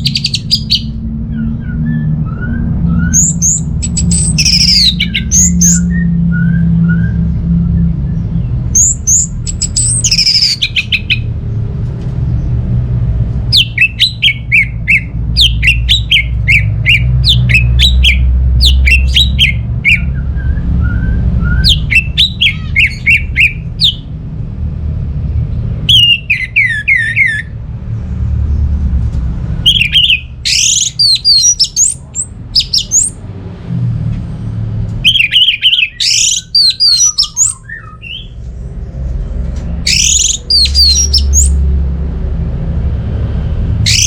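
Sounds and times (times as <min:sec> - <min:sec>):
thrush singing: 0:00.0 - 0:11.4
low steady rumble: 0:00.0 - 0:44.0.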